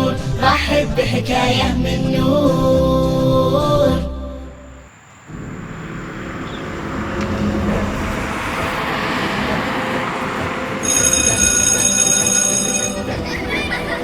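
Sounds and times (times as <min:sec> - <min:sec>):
rushing rumbling noise: 0:04.8 - 0:14.0.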